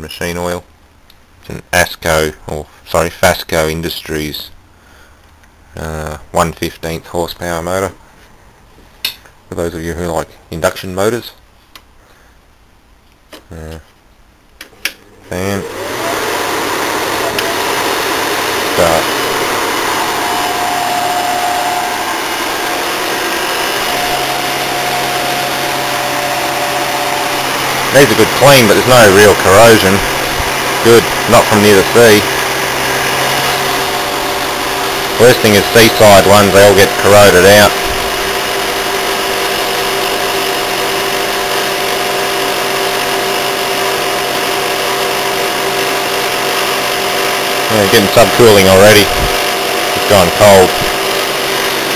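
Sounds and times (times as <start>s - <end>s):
compressor humming: 14.6s - 51.9s
air conditioner fan blowing: 14.7s - 51.9s.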